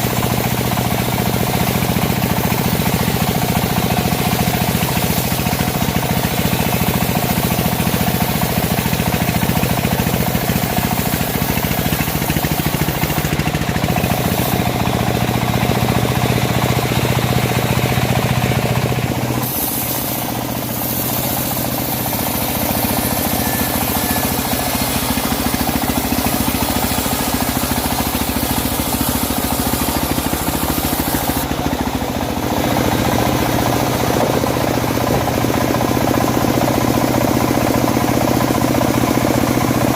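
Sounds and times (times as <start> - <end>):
engine-driven bandsaw sawing logs: 0.0 - 39.9.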